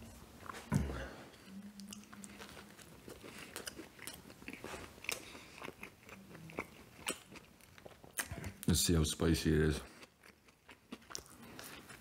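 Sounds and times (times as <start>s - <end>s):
chewing crunches: 1.8s - 8.7s, 9.8s - 12.0s.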